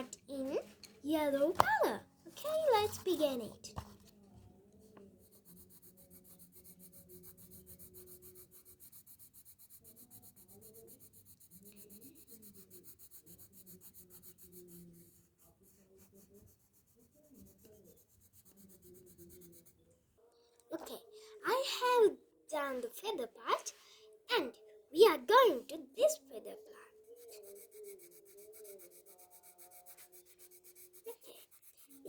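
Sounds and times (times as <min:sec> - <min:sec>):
pencil scratching on paper: 0:02.4 - 0:19.9, 0:26.1 - 0:32.0.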